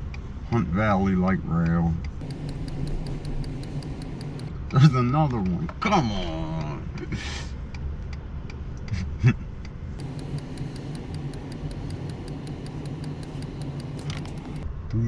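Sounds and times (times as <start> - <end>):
rapid even ticking: 2.1 - 5.6, 9.6 - 14.6
truck engine idling: 2.2 - 4.6, 10.0 - 14.6.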